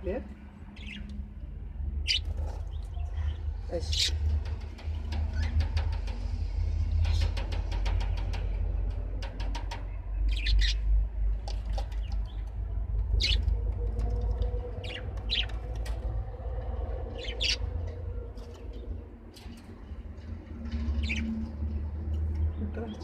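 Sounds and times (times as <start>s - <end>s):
small birds chirping: 0.0s - 5.7s, 9.9s - 16.2s, 16.8s - 23.0s
steady low rumble: 0.0s - 23.0s.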